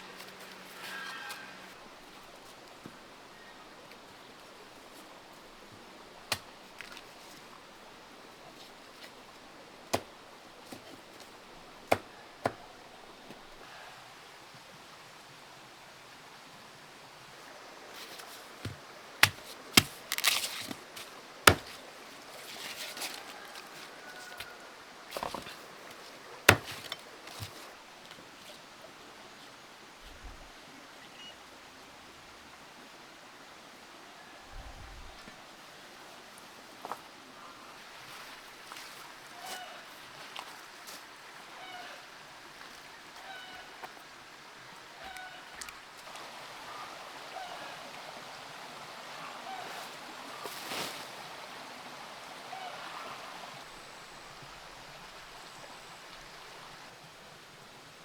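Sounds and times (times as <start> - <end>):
faint steady hiss: 0.0 - 58.0
sharp knocks: 21.5 - 21.8.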